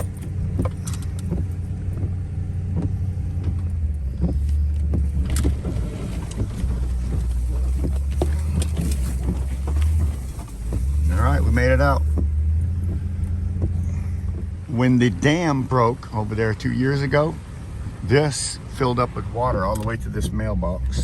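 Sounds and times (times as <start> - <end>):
knocks and rattles: 0.0 - 14.7
vehicle engine and road rumble: 0.0 - 21.0.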